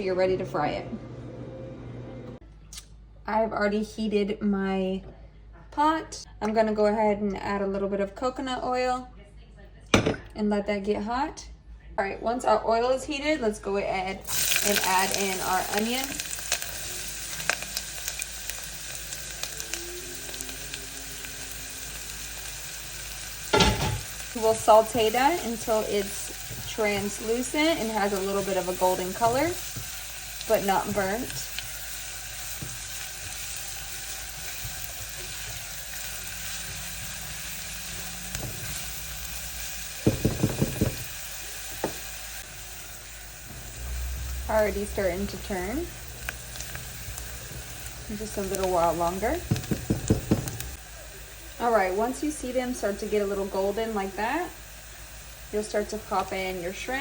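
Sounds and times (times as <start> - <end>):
onion sizzling in oil: 14.2 - 57.0
crackles and pops: 45.8 - 50.8
knocks: 49.5 - 50.6.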